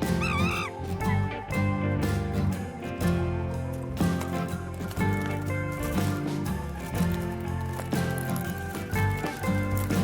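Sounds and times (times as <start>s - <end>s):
high-pitched animal call: 0.0s - 0.8s
background music with steady beat: 0.0s - 10.0s.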